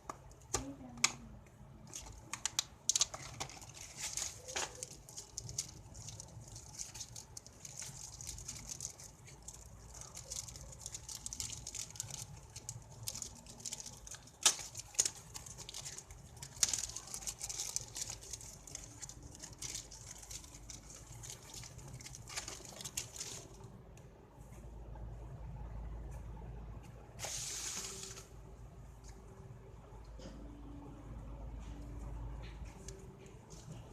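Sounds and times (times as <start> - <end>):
packaging crinkling and rustling: 1.8 - 23.8, 27.2 - 28.4.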